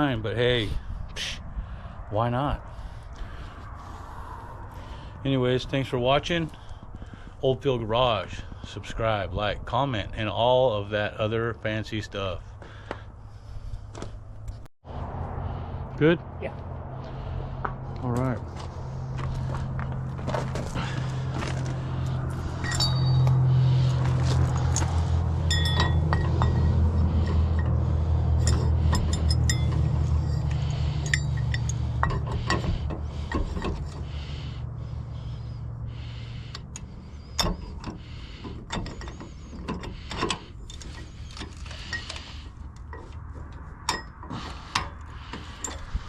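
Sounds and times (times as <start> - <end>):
low steady rumble: 0.0 - 46.0
metallic clinks of parts: 22.4 - 34.0, 36.7 - 46.0.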